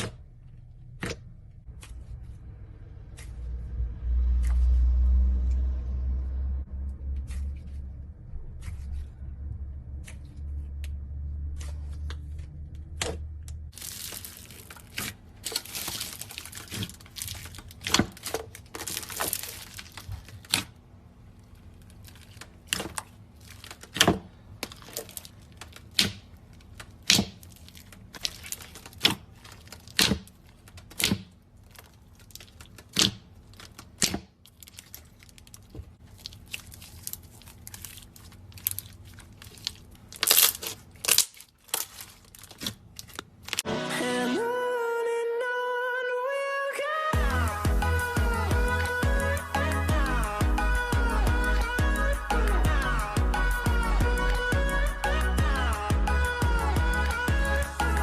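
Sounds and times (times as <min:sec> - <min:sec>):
low hum: 0:00.0 - 0:17.7, 0:47.2 - 0:58.0
slime crackling and popping: 0:13.7 - 0:20.7, 0:24.6 - 0:43.7.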